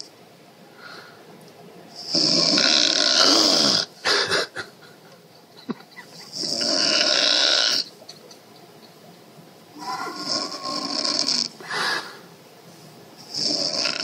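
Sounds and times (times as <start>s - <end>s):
woman snoring loudly: 2.0s - 3.9s, 6.3s - 7.9s, 9.8s - 11.9s, 13.3s - 14.0s.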